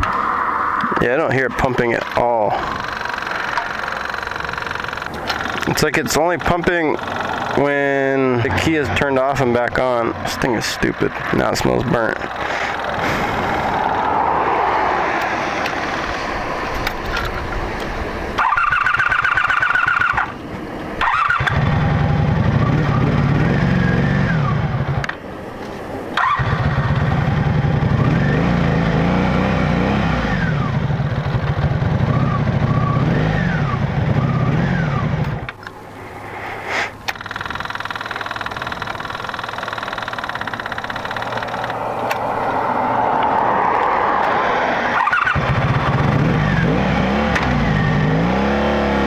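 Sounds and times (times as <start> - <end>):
motorcycle engine running: 2.0 - 10.1, 21.0 - 25.1, 26.2 - 35.6, 37.1 - 41.8, 45.0 - 49.0
electric fuel pump buzz: 37.1 - 42.1.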